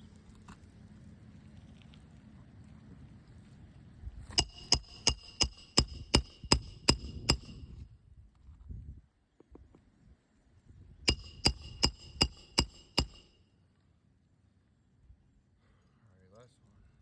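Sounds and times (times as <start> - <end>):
hammer striking nail with ringing ping: 4.3 - 7.7, 11.1 - 13.4.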